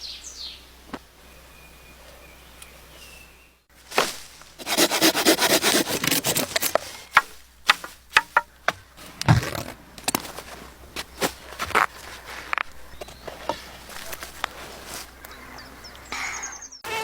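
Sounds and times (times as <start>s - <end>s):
scraping and crackling: 3.8s - 15.3s.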